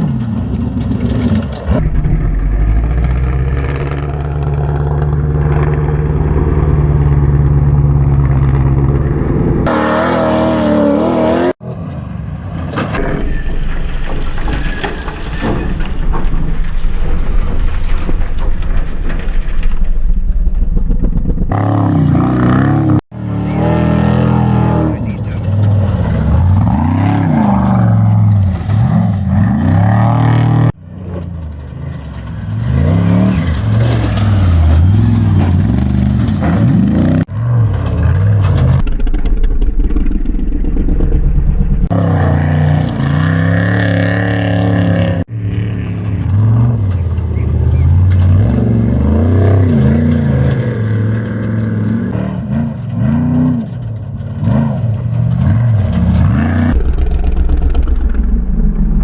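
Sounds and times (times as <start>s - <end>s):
race vehicle engines revving: 0.0s - 13.0s, 21.4s - 38.9s, 41.8s - 57.9s.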